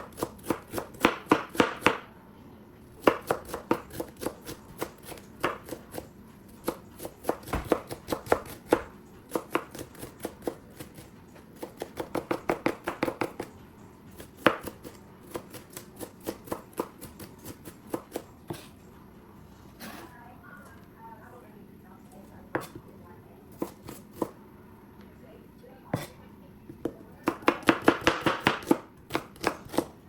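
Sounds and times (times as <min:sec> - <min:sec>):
knife chopping on cutting board: 0:00.0 - 0:02.0, 0:03.0 - 0:13.5, 0:14.1 - 0:18.7, 0:22.5 - 0:22.8, 0:23.5 - 0:24.4, 0:25.9 - 0:30.0.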